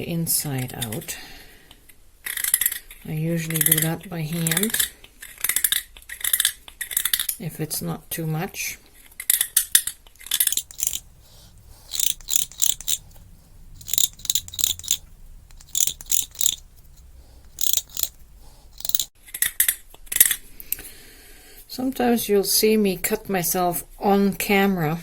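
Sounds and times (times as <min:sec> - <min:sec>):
tool scraping acrylic: 0:10.2 - 0:19.1.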